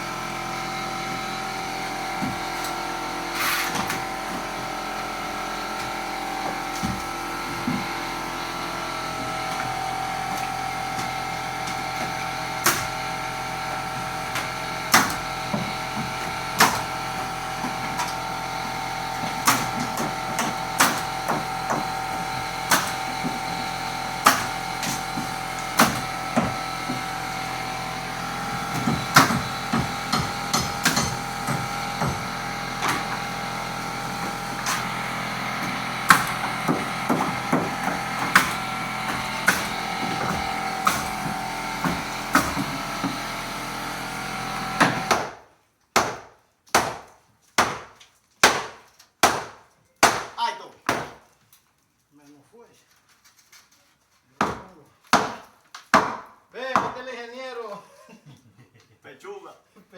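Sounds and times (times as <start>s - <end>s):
steady machine hum: 0.0s - 45.1s.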